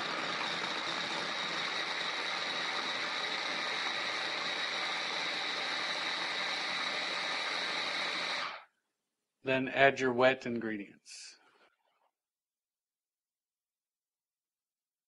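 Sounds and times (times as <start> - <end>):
food processor motor whirring: 0.0 - 8.7.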